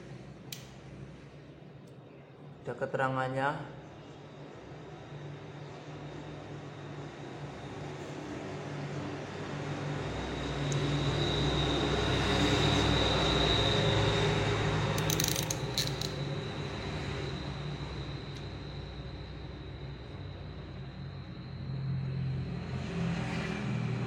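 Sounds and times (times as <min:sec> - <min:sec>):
sharp clicks: 0:15.0 - 0:16.2.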